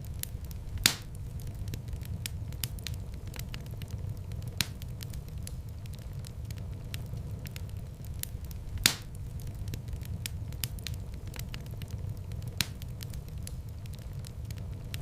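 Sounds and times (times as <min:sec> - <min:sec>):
fire crackling: 0:00.0 - 0:15.0
wood fire rumbling: 0:00.0 - 0:15.0
sharp wood pops: 0:00.8 - 0:01.1, 0:08.8 - 0:09.1.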